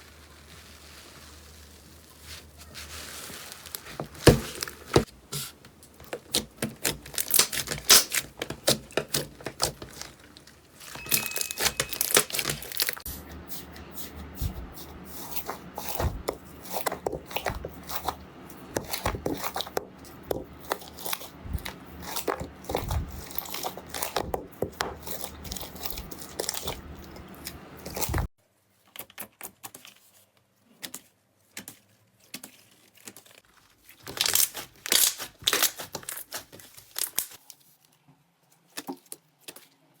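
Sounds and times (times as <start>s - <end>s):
slime crackling and popping: 6.0s - 13.1s, 16.6s - 28.3s, 33.1s - 37.4s.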